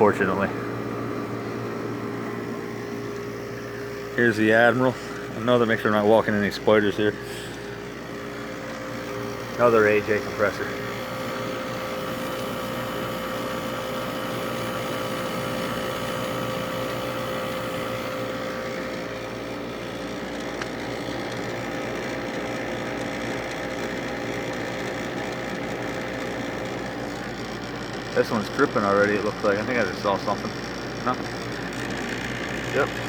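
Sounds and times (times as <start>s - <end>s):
air conditioner fan whoosh: 0.0s - 23.0s
air conditioner compressor humming: 0.0s - 33.0s.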